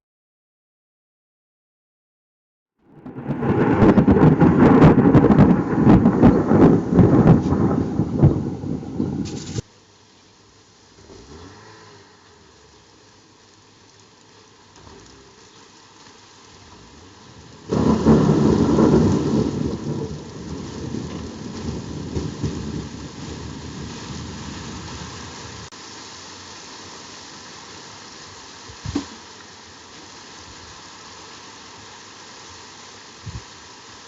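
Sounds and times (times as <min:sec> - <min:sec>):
thunder clap rumbling: 0:02.8 - 0:09.6, 0:16.6 - 0:25.7
steady rain: 0:02.9 - 0:34.0
short thump: 0:28.8 - 0:29.2.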